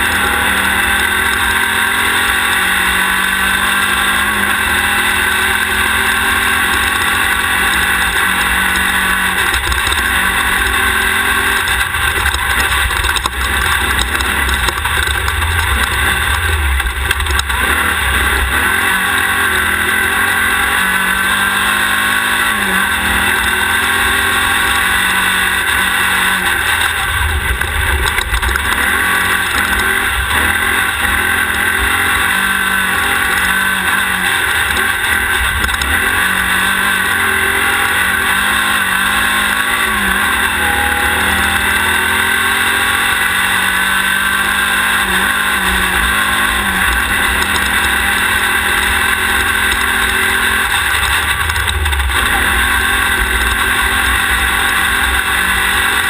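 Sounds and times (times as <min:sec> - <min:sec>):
race car engine revving: 0:00.0 - 0:56.0.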